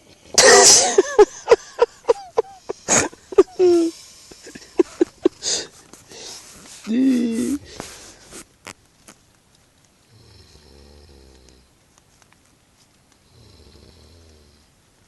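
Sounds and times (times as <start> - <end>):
person snoring: 10.1 - 11.6.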